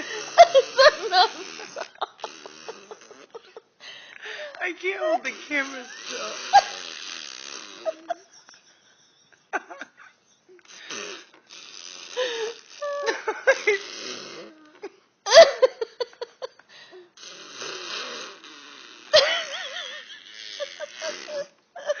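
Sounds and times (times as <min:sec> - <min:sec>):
woman laughing hysterically: 0:00.0 - 0:03.7, 0:07.8 - 0:10.5, 0:12.8 - 0:13.8, 0:15.3 - 0:16.6, 0:19.2 - 0:22.0.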